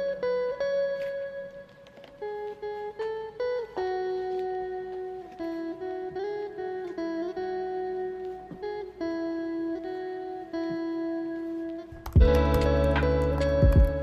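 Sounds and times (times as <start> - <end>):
plucked guitar melody: 0.0 - 14.0
loud music with deep bass: 12.2 - 14.0.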